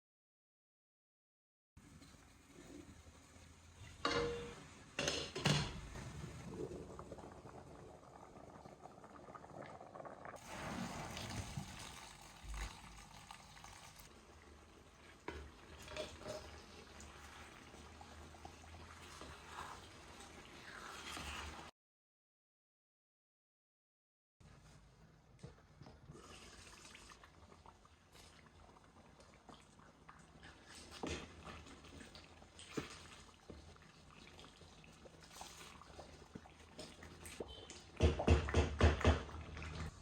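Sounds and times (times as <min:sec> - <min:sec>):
steady cooking hiss: 0:01.8 - 0:06.9, 0:10.4 - 0:21.7.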